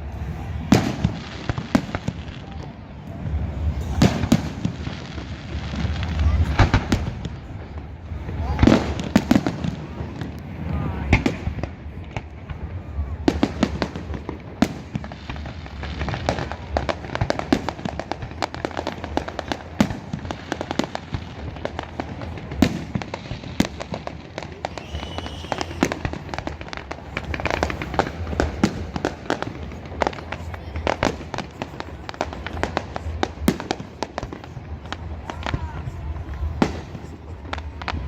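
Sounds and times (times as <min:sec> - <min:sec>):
fireworks bangs and crackling: 0:00.0 - 0:38.0
firework whistle: 0:24.5 - 0:26.6.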